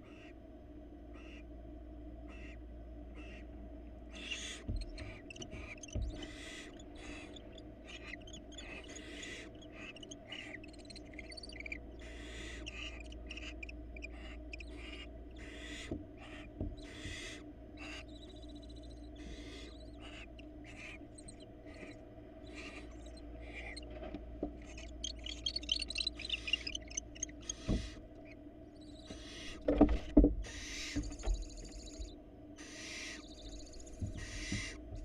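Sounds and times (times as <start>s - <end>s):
owls chattering calls: 0.0s - 0.3s, 1.1s - 1.5s, 2.2s - 3.5s, 4.1s - 23.9s, 24.5s - 29.8s, 30.4s - 35.0s
owls hissing: 3.2s - 3.4s, 4.1s - 23.9s, 24.6s - 29.7s, 30.4s - 34.8s
birds thumping against box: 29.6s - 31.7s.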